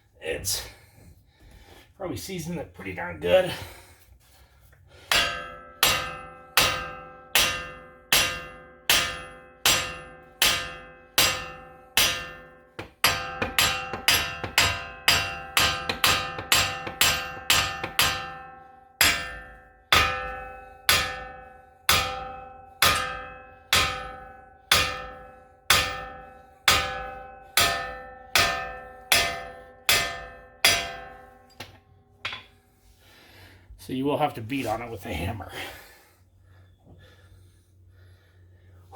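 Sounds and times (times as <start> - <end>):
hammer striking metal: 5.0 - 32.6.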